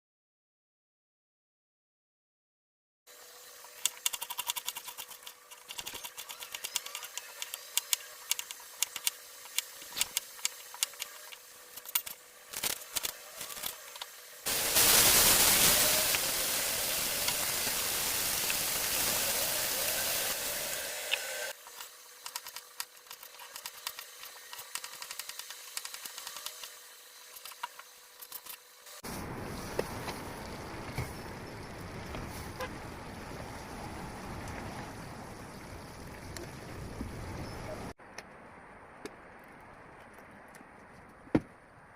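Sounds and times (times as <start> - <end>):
loud hiss: 14.4 - 21.6.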